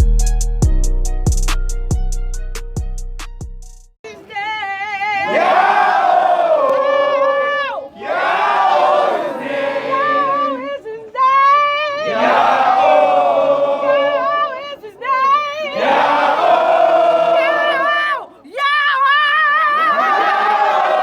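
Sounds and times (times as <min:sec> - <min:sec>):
group of voices crying out: 0:16.0 - 0:21.0.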